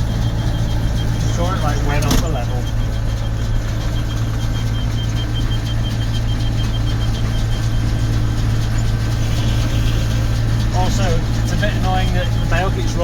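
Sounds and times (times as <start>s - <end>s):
rapid electronic beeping: 0.0s - 13.0s
tractor engine running: 0.0s - 13.0s.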